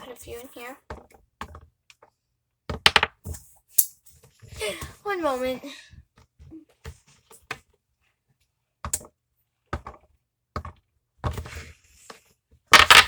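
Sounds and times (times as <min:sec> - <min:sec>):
marbles knocking on toy: 0:02.8 - 0:03.2, 0:12.8 - 0:13.0
marbles clattering: 0:02.9 - 0:03.1, 0:12.8 - 0:13.0.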